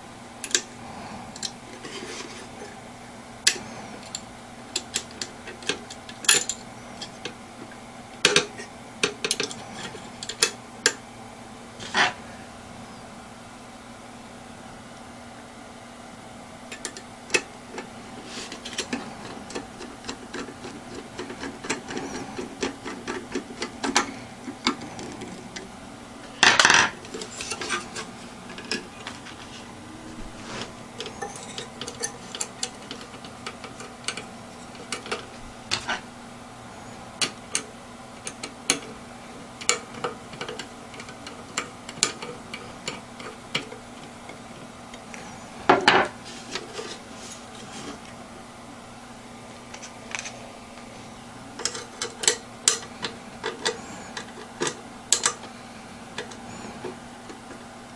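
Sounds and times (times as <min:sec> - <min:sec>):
faint steady hum: 0:00.0 - 0:57.9
hard parts clicking and tapping: 0:00.4 - 0:00.7, 0:03.4 - 0:11.0, 0:16.7 - 0:29.4, 0:31.0 - 0:36.0, 0:37.2 - 0:39.0, 0:39.6 - 0:47.0, 0:51.6 - 0:57.7.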